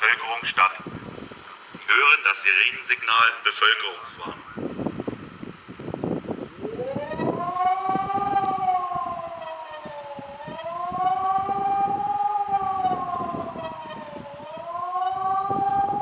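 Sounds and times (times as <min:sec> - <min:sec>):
wailing warning siren: 0:06.0 - 0:16.0.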